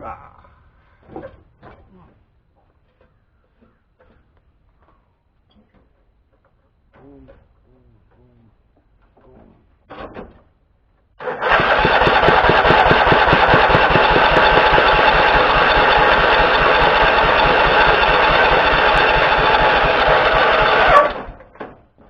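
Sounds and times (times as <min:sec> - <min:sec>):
electric starter cranking engine: 0:11.2 - 0:21.6.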